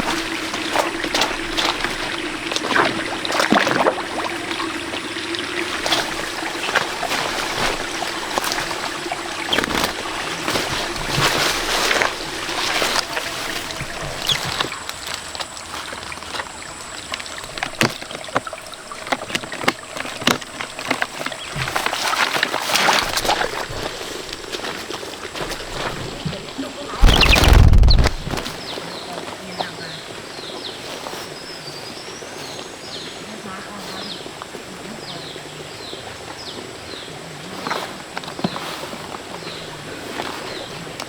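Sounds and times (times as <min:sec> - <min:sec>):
water splashing and trickling: 0:00.0 - 0:41.0.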